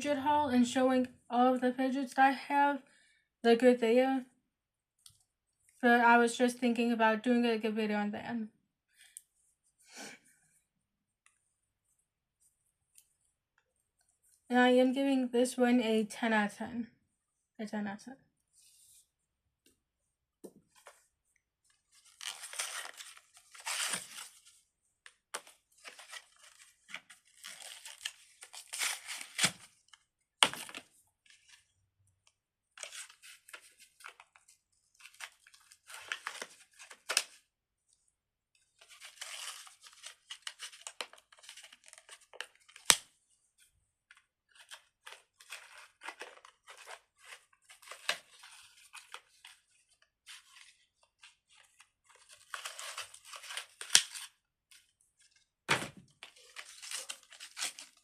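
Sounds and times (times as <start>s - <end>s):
plastic crinkling and tearing: 21.9s - 24.6s, 25.4s - 31.6s, 38.8s - 43.1s, 44.5s - 54.4s, 56.1s - 58.0s.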